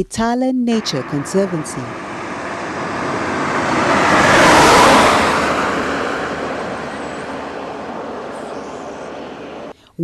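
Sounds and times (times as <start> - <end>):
vehicle passing by: 0.7 - 9.7.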